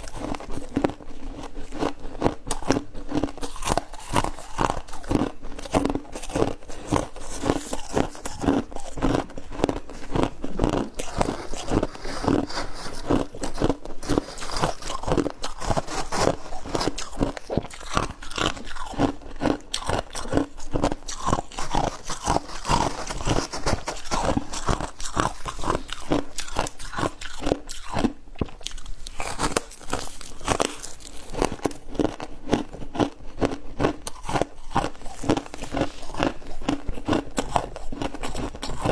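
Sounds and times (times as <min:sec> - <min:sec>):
ice being chewed: 0:00.0 - 0:38.9.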